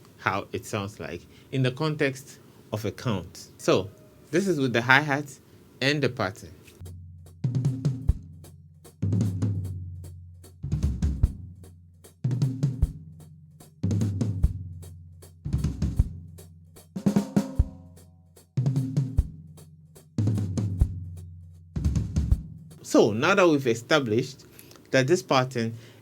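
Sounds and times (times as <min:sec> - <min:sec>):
drum kit groove: 0:06.1 - 0:25.8.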